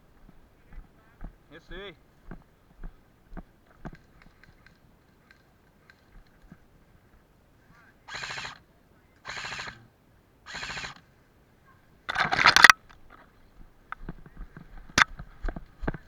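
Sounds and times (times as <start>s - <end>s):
airsoft rifle bursts: 8.1s - 8.6s, 9.2s - 9.8s, 10.5s - 11.0s.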